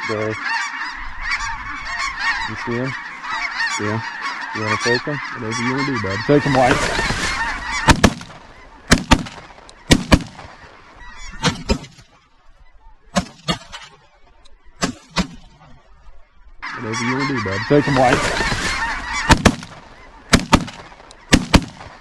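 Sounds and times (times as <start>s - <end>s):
geese calling: 0.0s - 22.0s
shotgun shots: 7.8s - 10.6s, 14.8s - 15.5s, 18.0s - 22.0s.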